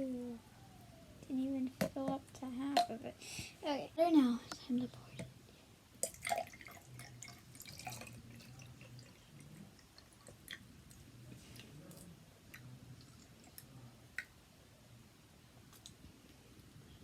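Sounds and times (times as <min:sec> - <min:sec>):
faint water drips: 0:06.0 - 0:14.3.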